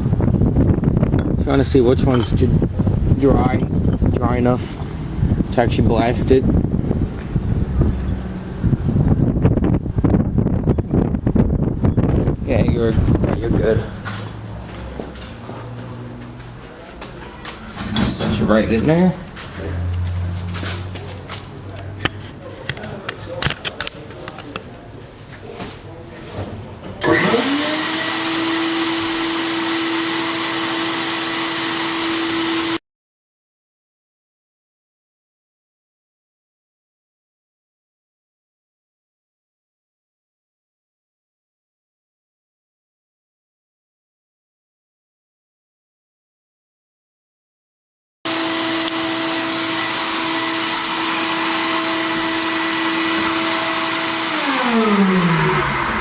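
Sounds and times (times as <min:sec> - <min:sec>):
machine whine: 0:48.3 - 0:56.0
motor hum: 0:48.3 - 0:56.0.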